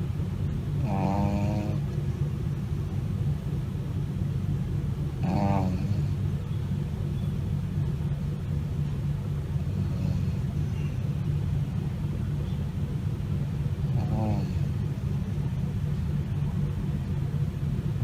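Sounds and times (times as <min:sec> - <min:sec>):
puppy snoring: 0:00.8 - 0:02.0, 0:05.2 - 0:06.2, 0:09.7 - 0:10.6, 0:13.8 - 0:14.9.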